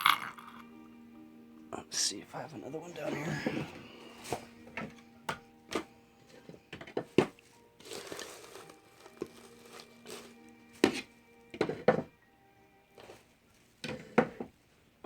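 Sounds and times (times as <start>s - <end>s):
quiet background music: 0.0s - 15.0s
tools knocking and rustling: 4.2s - 12.1s, 13.0s - 14.6s.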